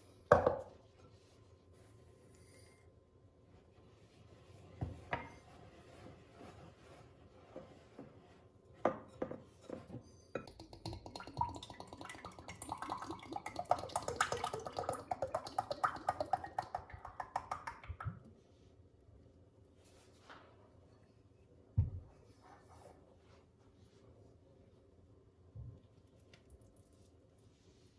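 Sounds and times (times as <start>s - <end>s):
utensil stirring in mixing bowl: 9.6s - 18.3s.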